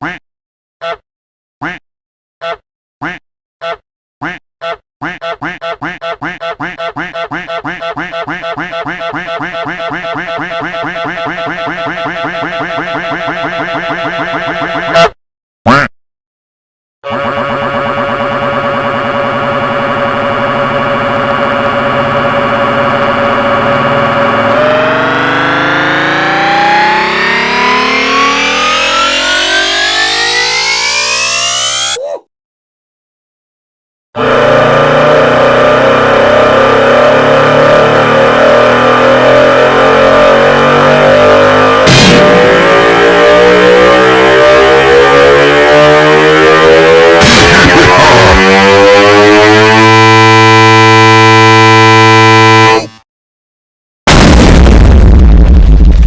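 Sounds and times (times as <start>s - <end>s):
sped-up quack and honk samples: 0.0s - 0.2s, 0.8s - 1.0s, 1.6s - 1.8s, 2.4s - 15.9s, 17.0s - 20.1s, 35.6s - 53.0s
loud distorted buzzing drone: 17.0s - 31.3s, 34.2s - 53.0s
loud distorted blast: 41.8s - 43.8s, 47.2s - 48.5s, 54.1s - 56.0s.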